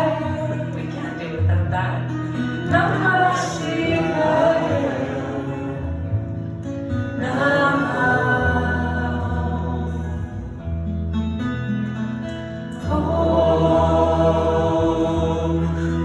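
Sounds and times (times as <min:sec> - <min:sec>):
strummed acoustic guitar: 0:00.0 - 0:16.0
voices chanting a devotional song: 0:02.8 - 0:06.1, 0:07.2 - 0:10.1, 0:12.9 - 0:16.0.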